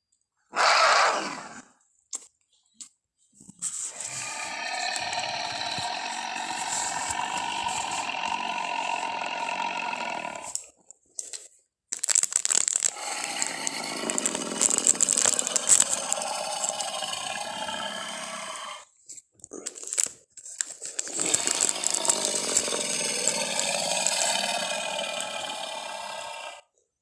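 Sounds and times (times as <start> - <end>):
raspy dinosaur roar: 0.5 - 1.7, 3.9 - 10.6, 12.9 - 18.9, 21.1 - 26.7.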